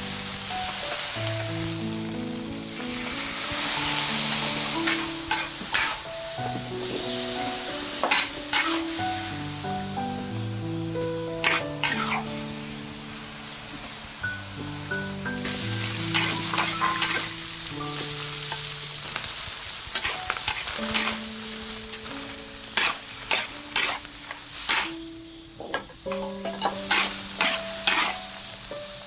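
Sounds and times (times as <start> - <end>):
oil sizzling in a pan: 0.0 - 29.0
soft background music: 0.0 - 29.0
metal spatula scraping a pan: 4.2 - 6.1, 8.0 - 9.0, 11.4 - 12.4, 15.6 - 17.3, 19.9 - 21.3, 22.0 - 25.0, 25.7 - 28.4.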